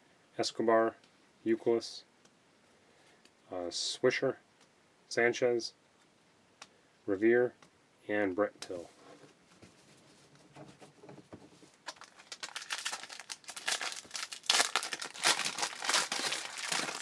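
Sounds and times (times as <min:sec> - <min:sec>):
plastic wrapper tearing and crinkling: 0:11.8 - 0:17.0.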